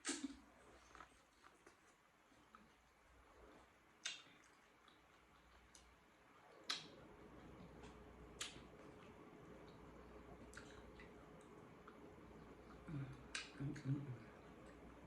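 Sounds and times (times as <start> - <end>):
wet mouth clicks and smacks: 4.0 - 5.9, 6.5 - 9.8, 10.4 - 12.0, 12.6 - 13.6
low voiced hum: 6.4 - 15.0.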